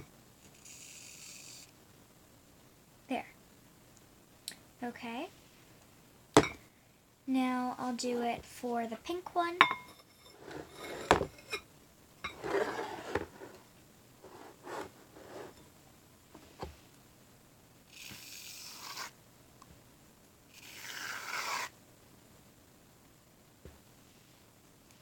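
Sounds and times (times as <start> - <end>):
light scraping: 10.0 - 11.6, 12.3 - 13.6, 14.2 - 15.7
aerosol can hissing foam: 18.0 - 19.1.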